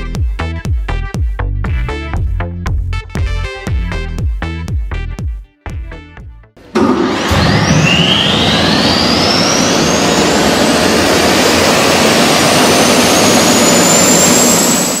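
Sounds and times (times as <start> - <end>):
jet engine spooling up: 6.6 - 15.0.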